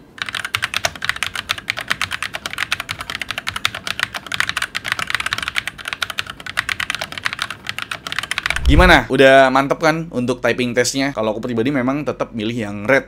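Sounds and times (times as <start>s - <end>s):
mechanical keyboard typing: 0.2s - 8.9s.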